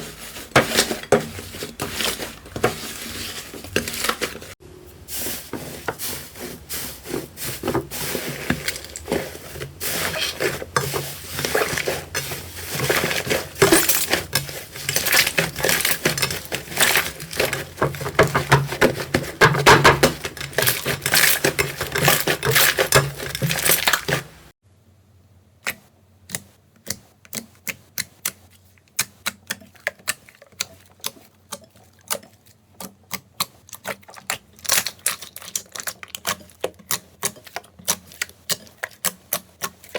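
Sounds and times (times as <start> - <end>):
slime squeezed crackling and popping: 33.1 - 39.4.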